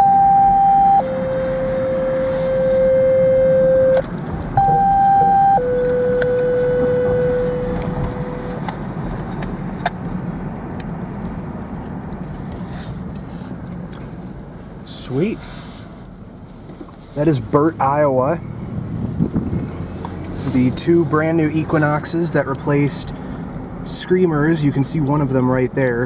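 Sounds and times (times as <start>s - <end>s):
warning siren two-pitch tone: 0.0s - 4.0s, 4.6s - 8.5s
car noise: 0.0s - 26.0s
wind noise: 18.6s - 20.0s.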